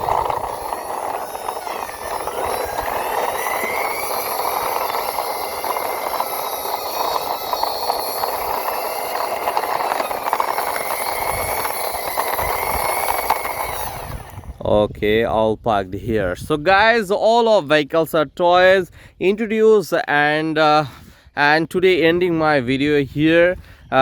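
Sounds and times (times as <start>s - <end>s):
toy truck wheels rattling: 0.0s - 14.6s.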